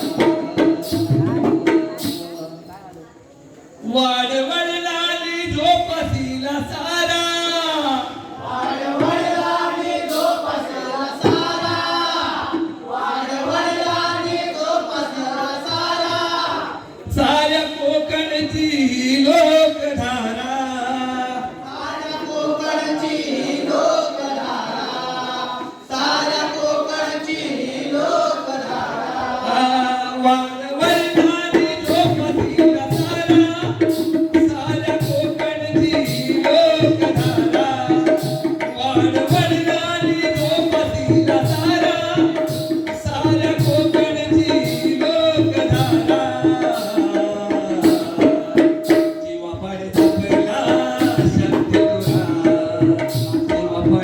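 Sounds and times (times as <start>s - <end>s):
man singing: 0.0s - 1.4s, 3.8s - 9.2s, 15.5s - 21.7s, 29.4s - 54.0s
hand drum fast beat: 0.0s - 2.4s, 30.8s - 54.0s.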